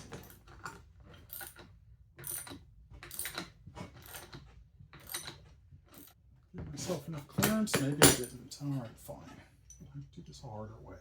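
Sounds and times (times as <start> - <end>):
steel tool parts clicking and scraping: 0.0 - 6.2.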